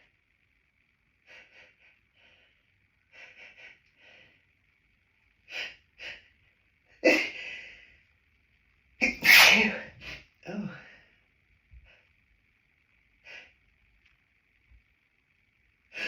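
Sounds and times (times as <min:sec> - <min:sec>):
person sneezing loudly: 0:09.0 - 0:10.2.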